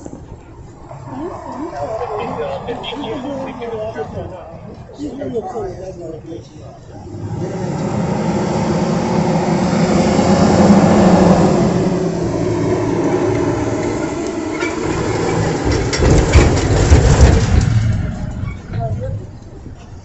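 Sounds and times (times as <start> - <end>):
vehicle passing with low hum: 0.0 - 4.6, 6.8 - 19.7.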